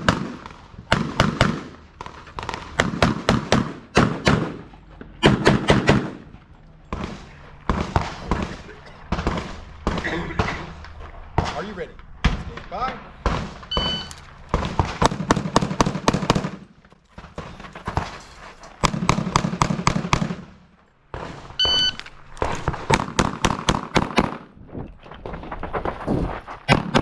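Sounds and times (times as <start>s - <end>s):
rapid pistol shots: 0.0s - 6.3s, 6.9s - 10.8s, 13.2s - 16.7s, 18.8s - 21.5s, 22.8s - 24.5s, 26.7s - 27.0s
shot timer beep: 13.7s - 14.1s, 21.6s - 22.0s.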